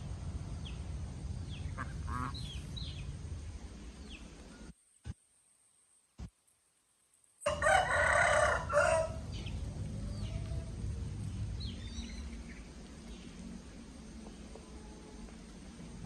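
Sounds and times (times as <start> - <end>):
small birds chirping: 0.0 - 5.2, 9.2 - 15.8
steady background noise: 0.0 - 16.0
rooster crowing: 7.4 - 9.4.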